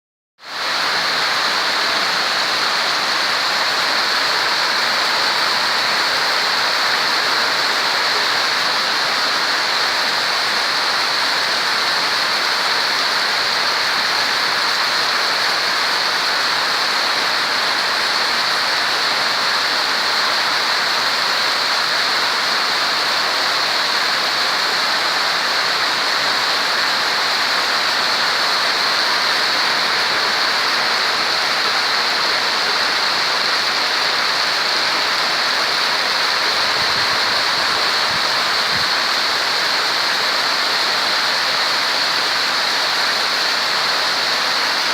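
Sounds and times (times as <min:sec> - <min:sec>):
rain falling: 0:00.5 - 0:44.9.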